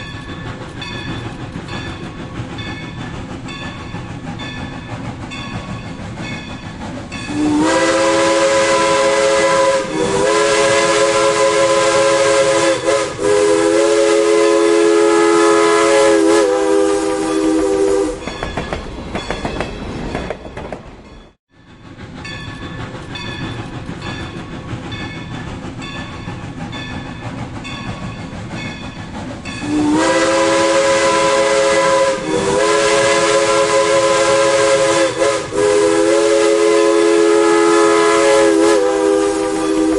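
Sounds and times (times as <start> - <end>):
passing train running and clatter: 0.0 - 39.9
steam locomotive whistle: 7.3 - 18.4, 29.6 - 39.9.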